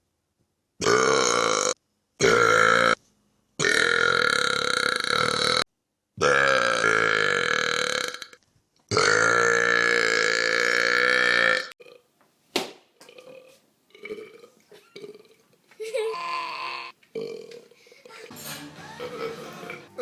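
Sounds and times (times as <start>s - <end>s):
person belching: 0.8s - 3.0s, 3.6s - 5.6s, 6.2s - 12.0s, 13.1s - 15.4s, 16.1s - 17.6s.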